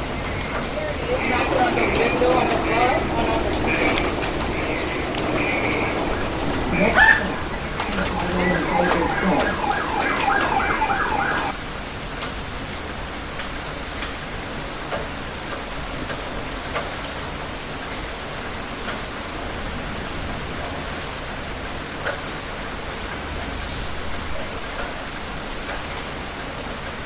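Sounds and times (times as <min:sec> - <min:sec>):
siren warbling: 0:00.0 - 0:11.6
heavy rain: 0:00.0 - 0:27.0
rain drops ticking: 0:00.0 - 0:27.0.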